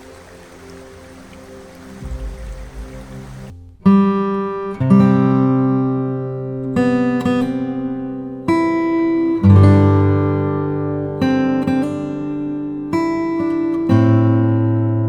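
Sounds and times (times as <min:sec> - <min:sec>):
acoustic guitar slow chords: 0:02.0 - 0:15.0.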